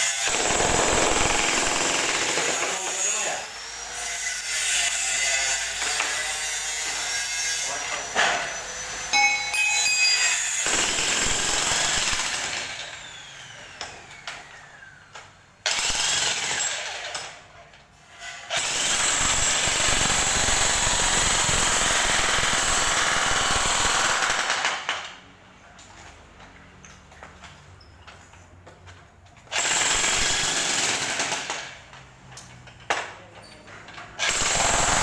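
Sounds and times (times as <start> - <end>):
jackhammer hammering: 0.0 - 3.3, 9.2 - 13.0, 29.5 - 31.8, 34.2 - 35.0.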